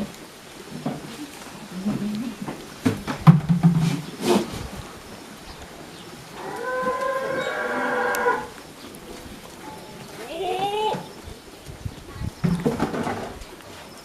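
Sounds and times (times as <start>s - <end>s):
sharp knocks: 2.8s - 4.4s.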